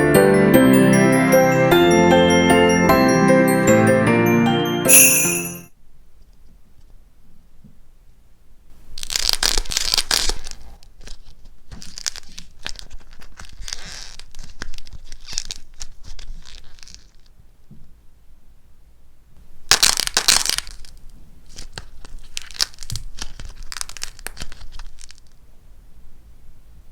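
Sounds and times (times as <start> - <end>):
dry clay crackling and crunching: 9.0 - 17.3, 19.7 - 25.4.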